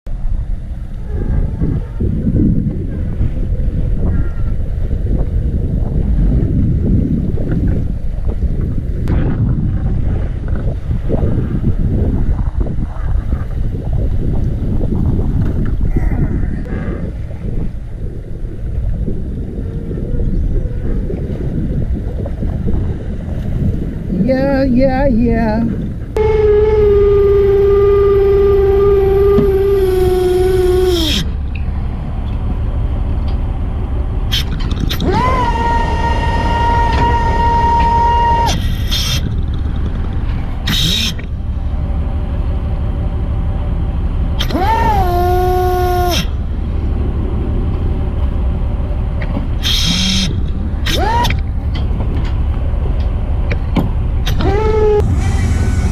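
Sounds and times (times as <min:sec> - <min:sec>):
low rumble of boat and water: 0:00.0 - 0:55.9
wind buffeting microphone: 0:00.1 - 0:55.9
long whining tones: 0:26.2 - 0:55.9.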